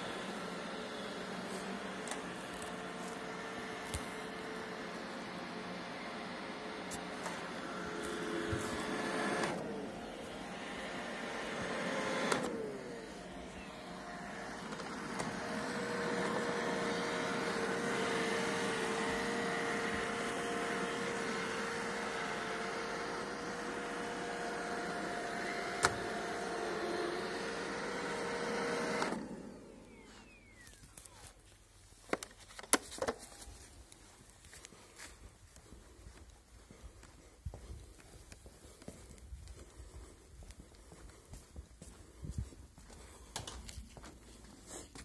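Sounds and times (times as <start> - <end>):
robot vacuum motor hum: 0.0 - 31.3.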